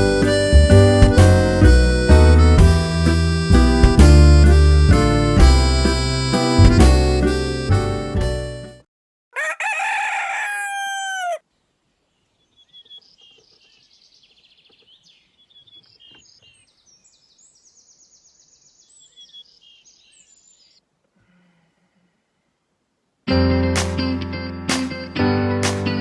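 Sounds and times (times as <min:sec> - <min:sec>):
rooster crowing: 0:09.3 - 0:11.5
small birds chirping: 0:11.6 - 0:20.9.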